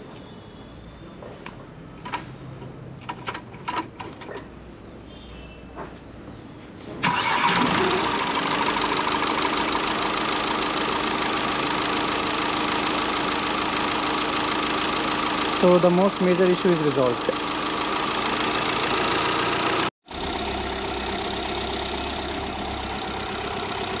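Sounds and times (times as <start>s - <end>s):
diesel engine starting and idling: 7.0s - 24.0s.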